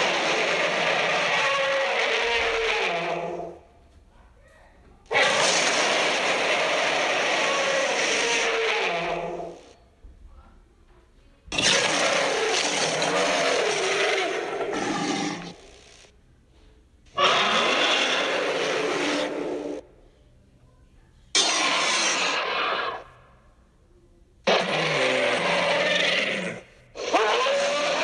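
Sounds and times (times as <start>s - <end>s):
monster roars: 0.0s - 3.5s, 5.1s - 9.6s, 11.5s - 15.7s, 21.4s - 23.1s, 24.5s - 28.0s.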